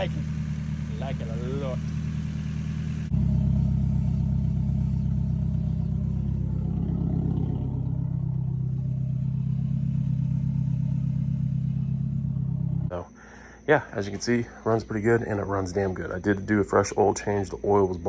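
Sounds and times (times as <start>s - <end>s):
car engine running steadily: 0.0s - 12.9s.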